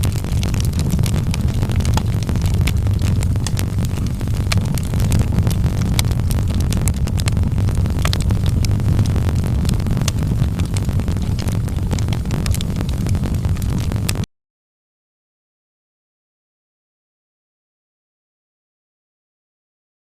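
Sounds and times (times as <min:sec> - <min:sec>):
fire popping and snapping: 0:00.0 - 0:14.3
low rumble of flames: 0:00.0 - 0:14.3.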